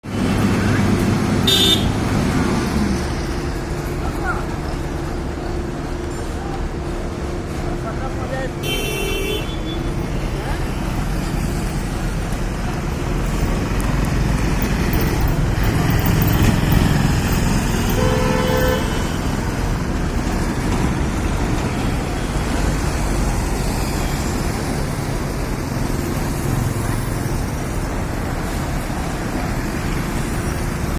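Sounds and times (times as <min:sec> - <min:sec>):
road traffic noise: 0:00.0 - 0:30.9
car horn toot: 0:01.4 - 0:02.0, 0:08.6 - 0:09.8, 0:18.0 - 0:19.1.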